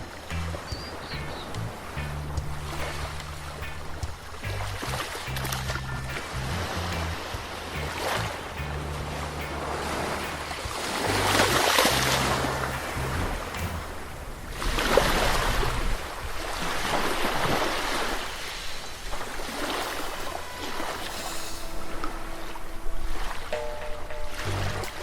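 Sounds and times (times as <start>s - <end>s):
sea waves washing onto shore: 6.3s - 25.0s.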